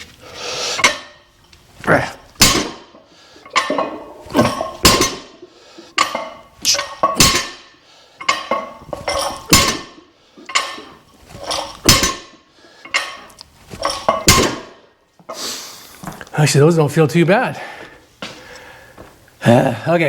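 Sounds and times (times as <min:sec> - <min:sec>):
weight plates clanking: 0:00.8 - 0:01.3, 0:02.4 - 0:14.8.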